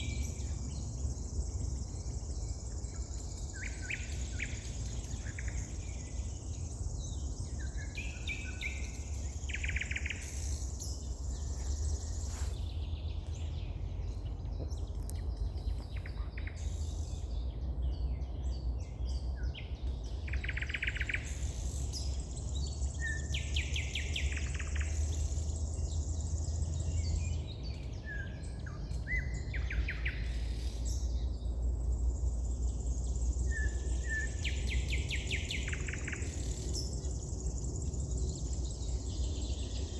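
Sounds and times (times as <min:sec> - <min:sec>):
steady low rumble: 0:00.0 - 0:20.2
songbirds trilling: 0:00.0 - 0:39.9.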